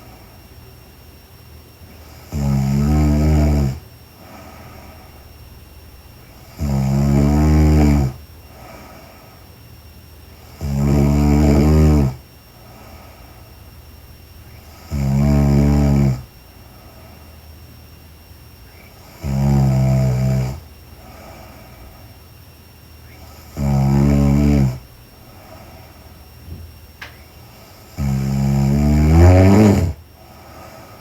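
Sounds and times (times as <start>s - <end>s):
woman snoring: 2.0s - 5.3s, 6.2s - 9.3s, 10.4s - 13.2s, 14.6s - 16.3s, 19.0s - 22.0s, 23.2s - 26.0s, 27.5s - 31.0s
soft breathing: 4.1s - 6.6s, 8.4s - 9.7s, 12.6s - 14.9s, 16.2s - 17.6s, 20.5s - 28.0s, 30.2s - 31.0s.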